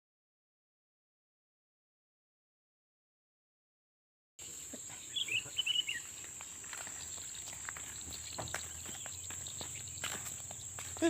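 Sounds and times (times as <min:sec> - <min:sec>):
crickets droning: 0:04.4 - 0:11.0.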